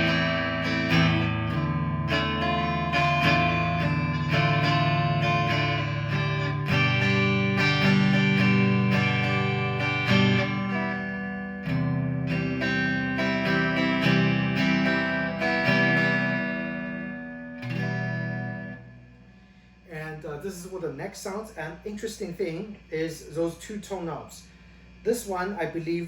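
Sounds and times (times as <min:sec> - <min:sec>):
clean electric guitar chords: 0:00.0 - 0:19.7
faint steady hum: 0:00.0 - 0:26.0.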